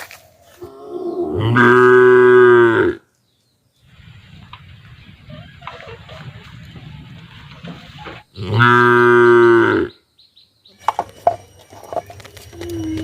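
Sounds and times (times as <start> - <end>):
cow mooing: 0.7 - 3.0, 8.4 - 10.0.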